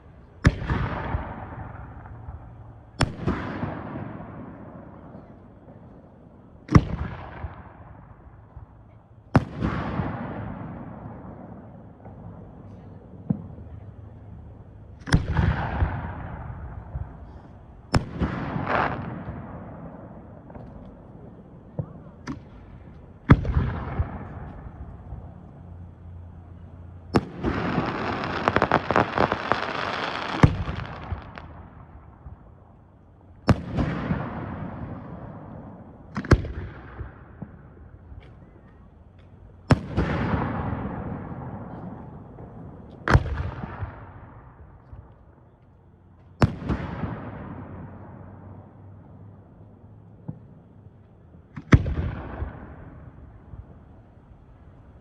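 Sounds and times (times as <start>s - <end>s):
firework shells bursting: 27.2s - 31.5s
firework crackle: 27.2s - 32.2s.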